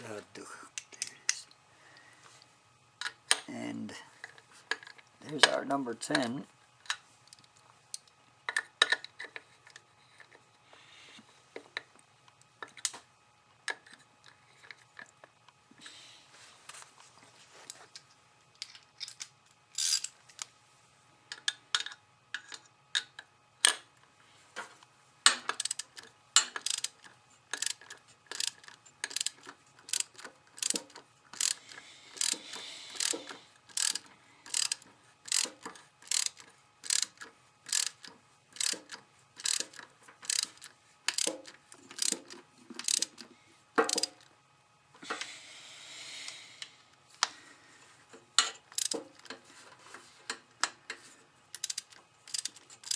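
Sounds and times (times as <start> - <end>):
tools and parts clinking: 18.6 - 20.4, 32.2 - 43.2, 43.8 - 44.3, 51.6 - 52.9
ratchet wrench clicking: 19.8 - 20.1, 25.5 - 43.2, 43.8 - 44.2, 48.7 - 49.3, 51.6 - 52.9.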